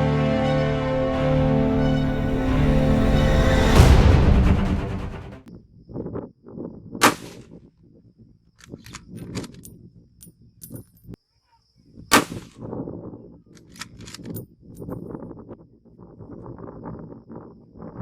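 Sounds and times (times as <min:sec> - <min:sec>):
metallic clicks and clinks: 0:08.6 - 0:11.2, 0:13.6 - 0:15.0.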